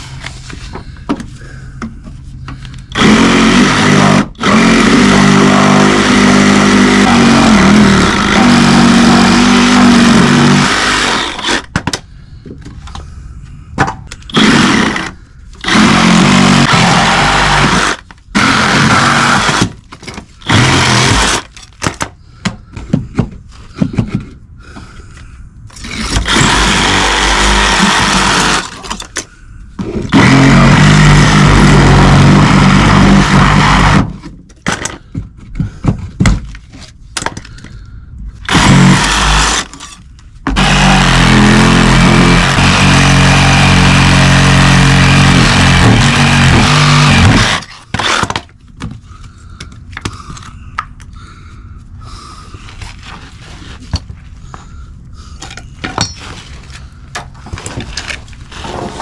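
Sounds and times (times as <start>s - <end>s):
power tool motor running: 30.1s - 34.0s, 38.5s - 39.6s, 40.6s - 47.7s.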